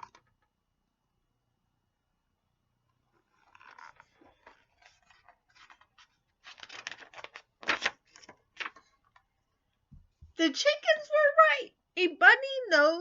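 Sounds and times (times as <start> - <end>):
paper pages rustling: 3.1 - 9.4.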